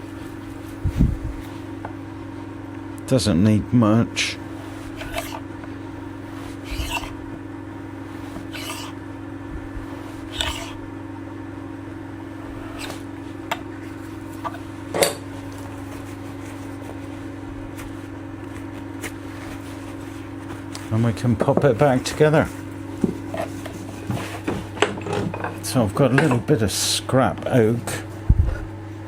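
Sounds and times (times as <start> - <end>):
steady low hum: 0.0 - 29.0
metal scrapes and clinks: 5.0 - 5.4, 6.7 - 7.1, 8.5 - 9.0, 10.3 - 10.8.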